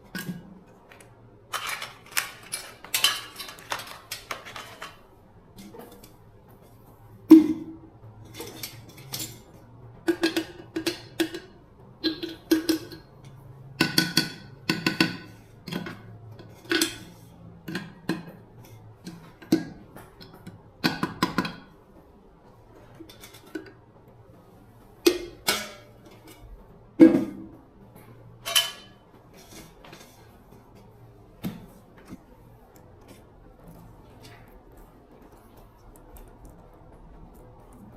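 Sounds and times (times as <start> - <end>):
metal clinks and knocks: 1.5 - 5.0.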